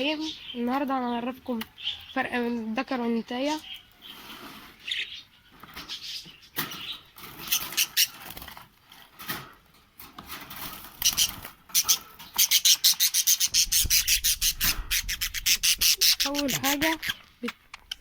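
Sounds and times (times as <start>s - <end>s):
budgerigars chirping: 3.3s - 8.4s, 11.0s - 18.0s.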